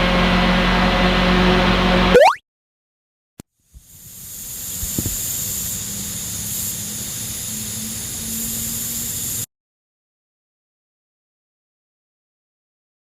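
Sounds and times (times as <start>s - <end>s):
steady hiss: 3.7s - 9.5s.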